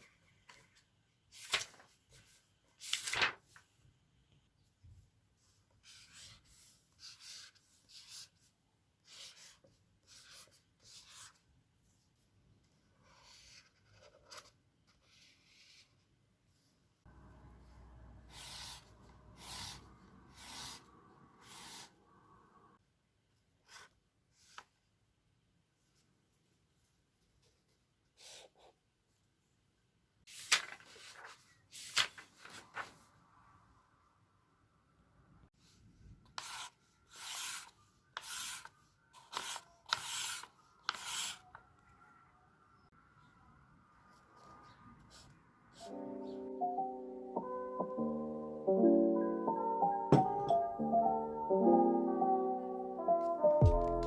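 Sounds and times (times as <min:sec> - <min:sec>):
pen scratching on paper: 0:05.8 - 0:08.3, 0:09.0 - 0:11.4, 0:18.3 - 0:21.9, 0:36.4 - 0:41.4
rubbing strokes on paper: 0:18.3 - 0:22.0.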